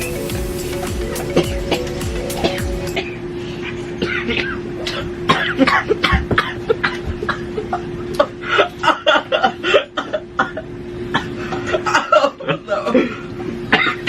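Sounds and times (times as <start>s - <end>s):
steady hum: 0.0s - 14.0s
person coughing: 3.8s - 14.0s.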